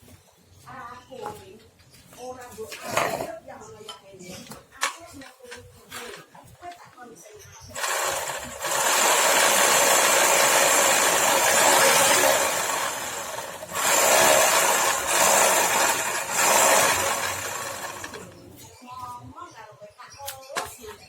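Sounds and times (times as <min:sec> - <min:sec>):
drum sander sanding wood: 0:07.8 - 0:18.3.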